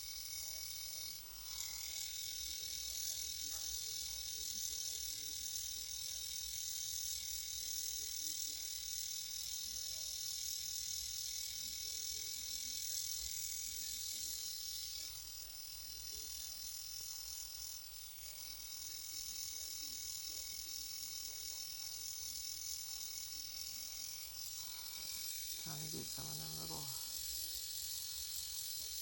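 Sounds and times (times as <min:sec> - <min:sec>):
trimmer buzzing: 0:21.8 - 0:27.2.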